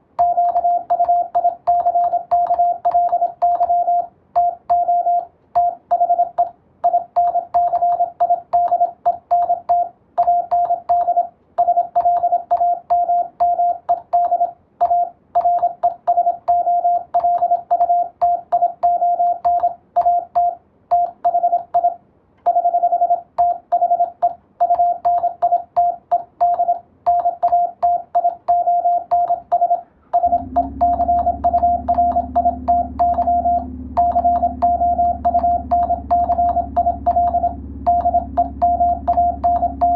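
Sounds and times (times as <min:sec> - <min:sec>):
morse code beeps: 0:00.2 - 0:39.9
low steady hum: 0:29.8 - 0:39.9.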